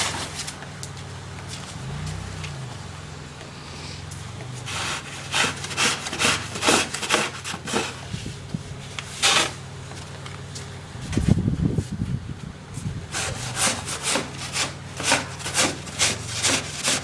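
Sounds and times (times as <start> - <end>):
car engine hum: 0.0 - 17.0
short rasping scrapes: 4.6 - 8.3, 9.1 - 9.6, 13.1 - 17.0.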